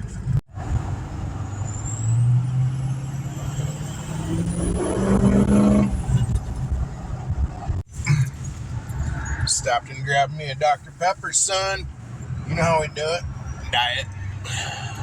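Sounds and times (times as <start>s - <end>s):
diesel engine accelerating: 0.0s - 7.8s.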